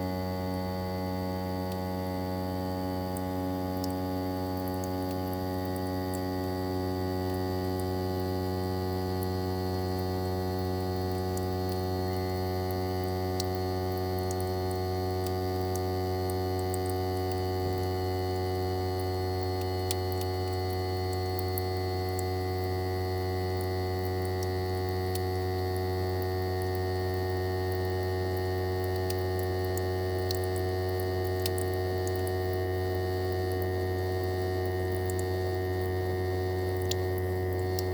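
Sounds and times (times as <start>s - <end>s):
compressor humming: 31.2s - 37.9s.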